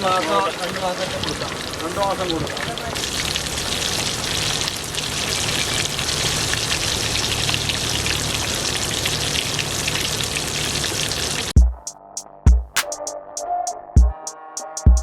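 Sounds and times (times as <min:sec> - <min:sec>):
fish sizzling in hot oil: 0:00.0 - 0:11.5.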